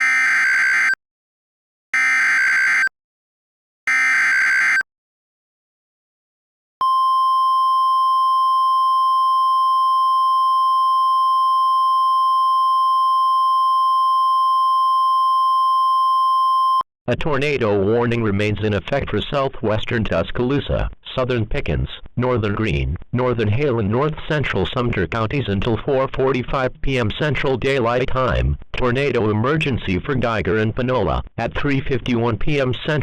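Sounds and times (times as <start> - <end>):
high-pitched warning alarm tone: 0.0 - 1.0, 2.0 - 2.9, 3.9 - 4.8.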